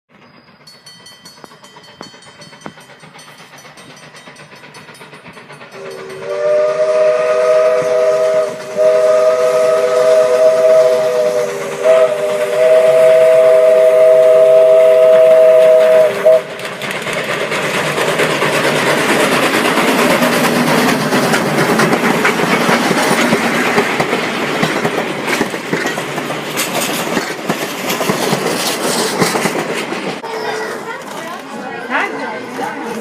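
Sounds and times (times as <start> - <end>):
train noise: 0.1 - 33.0
steam locomotive whistle: 5.7 - 16.6.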